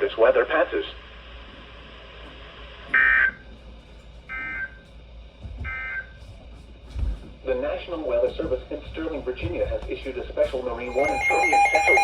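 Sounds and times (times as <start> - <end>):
two-tone digital squawks: 10.9 - 12.0.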